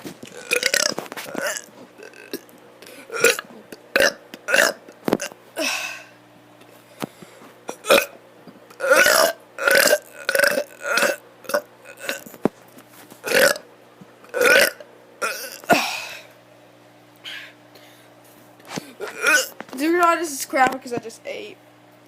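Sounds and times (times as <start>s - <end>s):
child burping: 0.4s - 6.1s, 7.7s - 8.2s, 8.8s - 12.2s, 13.2s - 13.6s, 14.3s - 16.3s, 19.0s - 19.6s.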